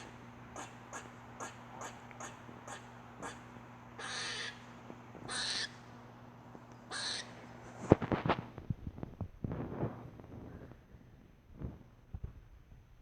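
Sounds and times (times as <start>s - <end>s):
squirrel rasping calls: 0.0s - 4.6s, 5.3s - 5.8s, 6.9s - 7.4s.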